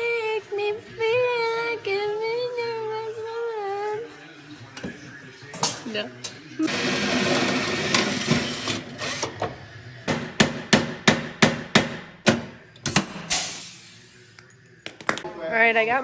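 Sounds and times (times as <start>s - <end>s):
hammer striking: 10.1s - 13.4s.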